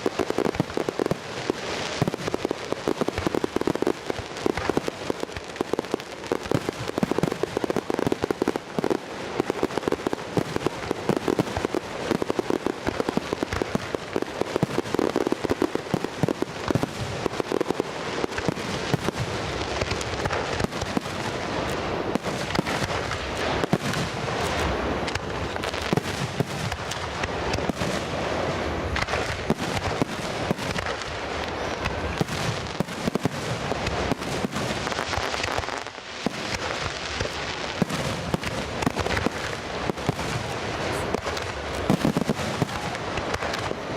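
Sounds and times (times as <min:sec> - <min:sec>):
fireworks bangs and crackles: 0:00.0 - 0:43.9.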